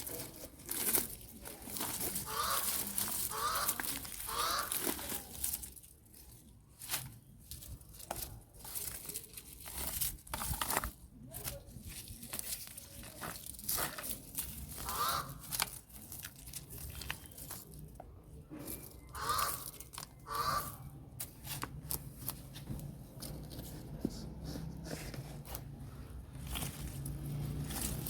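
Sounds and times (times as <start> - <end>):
bean plants rustling and tearing: 0.0 - 24.0, 25.4 - 28.0
bird calling: 2.2 - 4.8, 14.8 - 15.5, 19.0 - 20.9.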